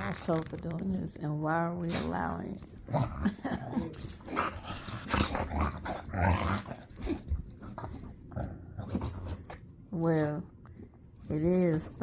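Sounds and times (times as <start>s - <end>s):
puppy growling: 1.9s - 9.4s.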